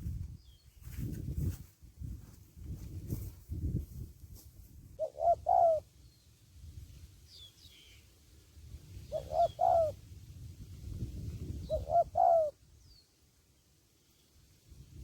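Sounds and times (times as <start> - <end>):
dove cooing: 5.0 - 5.9, 9.1 - 10.0, 11.6 - 12.6.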